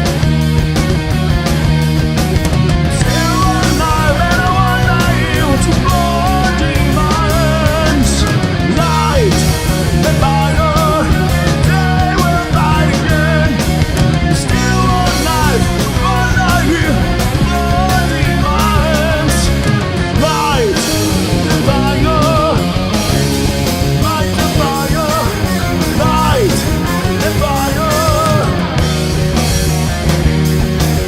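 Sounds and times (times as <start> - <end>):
bass: 0.0 - 31.0
distorted guitars: 0.0 - 31.0
drums: 0.0 - 31.0
wavering melodic lead line: 0.0 - 31.0.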